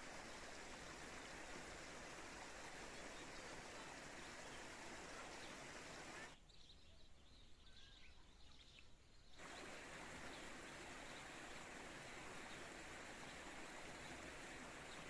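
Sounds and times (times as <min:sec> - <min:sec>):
flowing spring water: 0:00.0 - 0:06.4, 0:09.4 - 0:15.0
faint bird chirps: 0:02.6 - 0:15.0.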